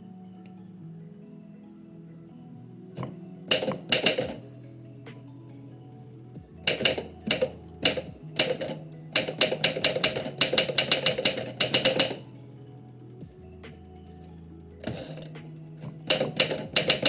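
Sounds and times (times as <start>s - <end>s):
typewriter keys striking: 3.5s - 4.4s, 6.6s - 12.3s, 14.8s - 17.0s.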